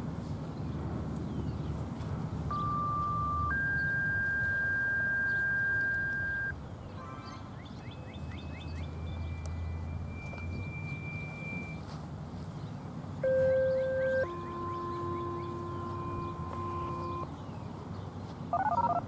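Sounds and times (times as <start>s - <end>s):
electronic beep tones: 2.5s - 6.5s, 8.7s - 11.9s, 13.2s - 17.3s, 18.6s - 19.0s.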